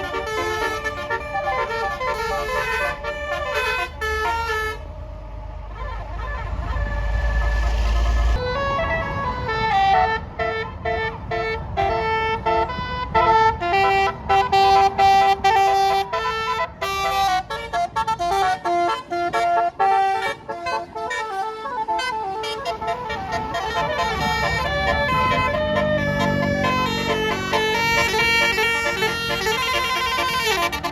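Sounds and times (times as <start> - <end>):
musical air horn playing a tune: 0.0 - 30.9
low rumble: 0.9 - 9.8.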